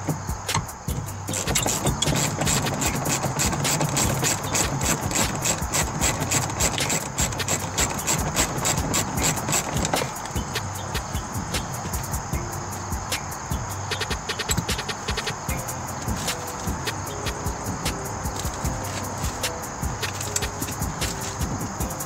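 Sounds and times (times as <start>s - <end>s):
rapid irregular clicking: 0.0s - 22.0s
power tool motor hum: 1.3s - 10.4s.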